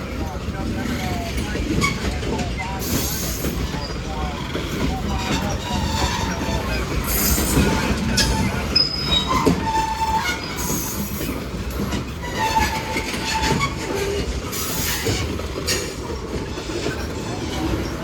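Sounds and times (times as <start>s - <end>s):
freight train rolling past: 0.0s - 18.0s
high wheel squeals: 1.0s - 11.4s.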